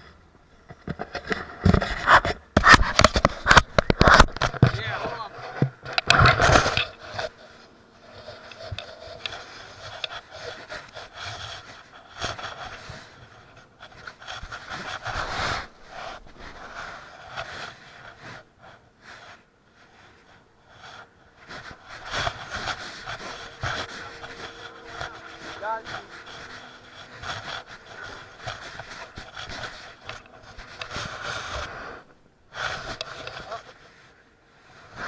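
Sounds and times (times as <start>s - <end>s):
person breathing hard: 20.1s - 33.7s.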